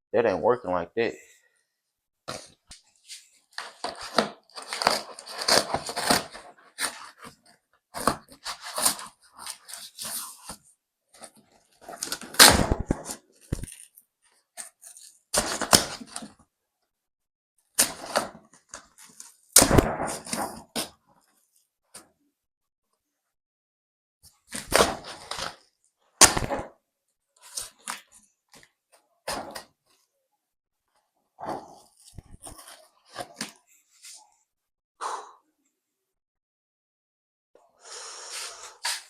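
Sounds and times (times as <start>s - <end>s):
cardboard tearing and rustling: 3.6s - 7.4s.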